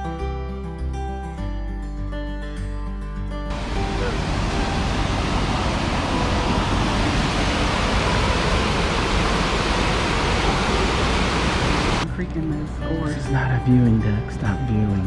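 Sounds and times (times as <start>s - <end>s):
waterfall roaring: 3.5s - 12.0s.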